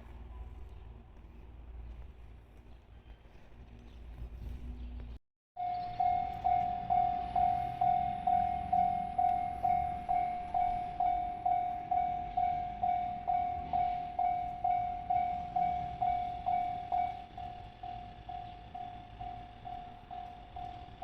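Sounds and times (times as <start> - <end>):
level crossing warning bell: 5.6 - 21.0.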